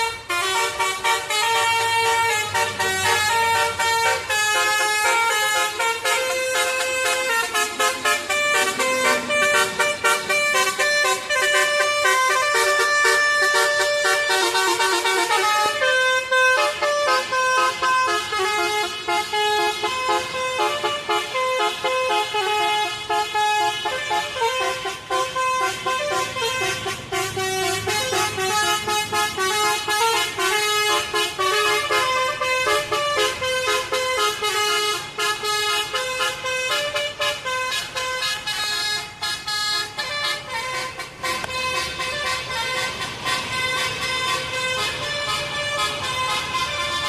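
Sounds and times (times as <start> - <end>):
musical bus horn playing a tune: 0.0 - 47.0
steady beat: 5.2 - 21.5.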